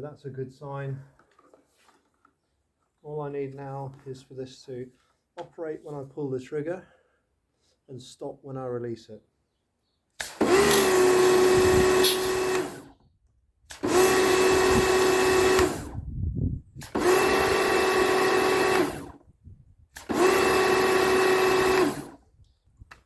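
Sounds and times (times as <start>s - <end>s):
pressure washer motor and pump: 10.2s - 12.9s, 13.7s - 16.0s, 16.8s - 19.2s, 19.9s - 22.2s.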